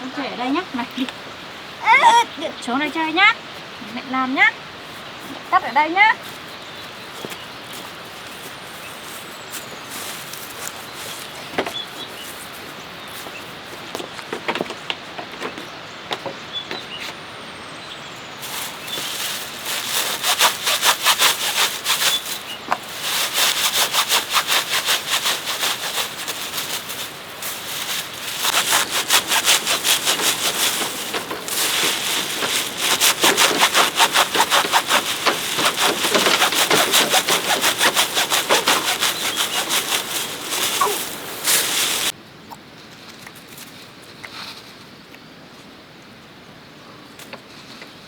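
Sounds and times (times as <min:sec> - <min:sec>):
hand saw cutting bamboo: 0:18.5 - 0:42.1.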